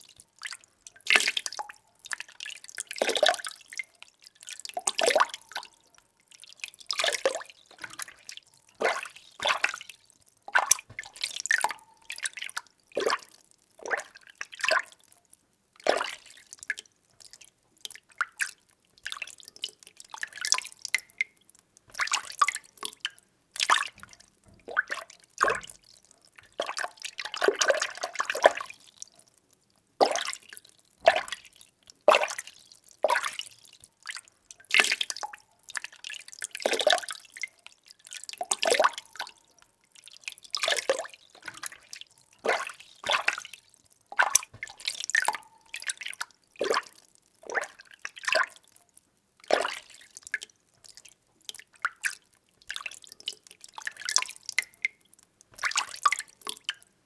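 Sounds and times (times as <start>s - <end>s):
water sloshing and splashing: 6.9s - 14.9s, 21.9s - 23.0s, 23.6s - 28.8s, 40.2s - 48.6s, 49.5s - 50.1s, 55.6s - 56.7s.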